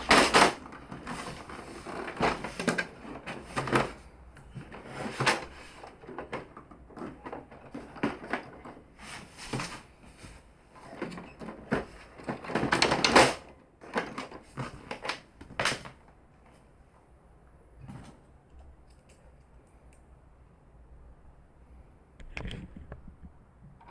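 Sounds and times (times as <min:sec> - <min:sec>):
plastic scraping: 0:00.0 - 0:16.0.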